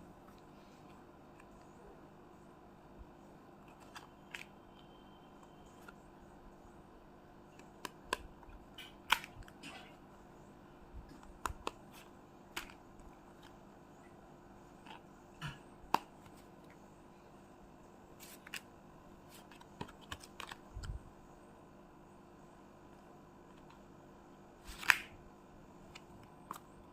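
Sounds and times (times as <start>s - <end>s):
cards clicking and snapping: 7.5s - 9.6s, 11.1s - 12.8s, 18.2s - 18.7s, 19.4s - 20.9s, 24.7s - 25.1s.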